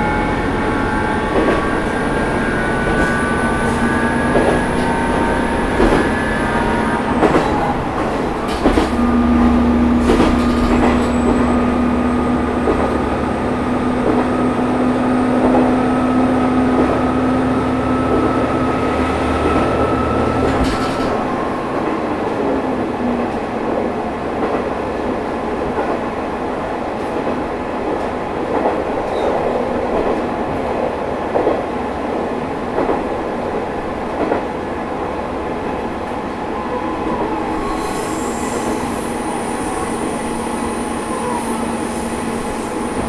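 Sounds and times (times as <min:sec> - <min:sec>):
railcar engine and wheels rumbling: 0:00.0 - 0:43.0
track knocks: 0:02.8 - 0:11.8, 0:19.4 - 0:21.4.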